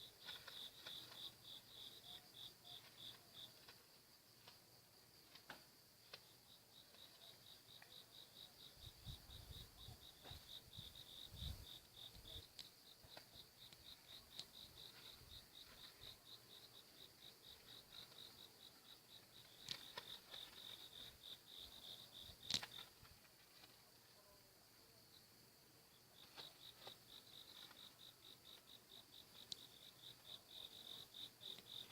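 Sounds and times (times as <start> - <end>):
crickets chirping: 0.0 - 31.9
faint clicks: 19.4 - 21.1.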